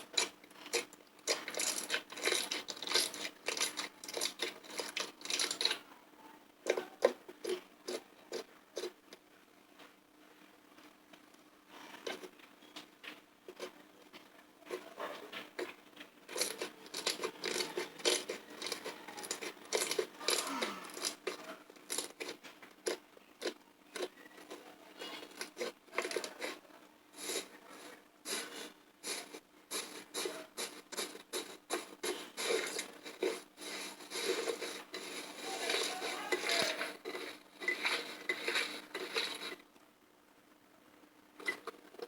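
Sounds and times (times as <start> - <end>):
slime squelching and crackling: 0.0 - 5.8, 14.7 - 39.6.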